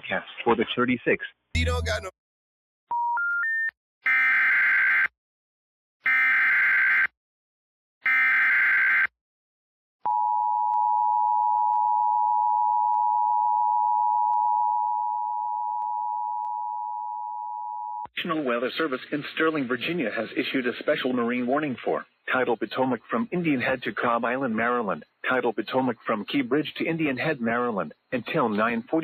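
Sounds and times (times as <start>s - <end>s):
long steady attention tone: 10.1s - 18.1s.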